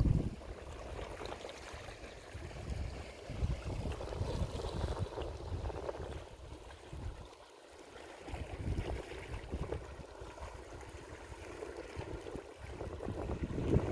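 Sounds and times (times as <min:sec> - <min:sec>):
wind buffeting microphone: 0:00.0 - 0:01.2, 0:01.8 - 0:07.3, 0:08.3 - 0:13.9
sea wash: 0:00.0 - 0:13.9.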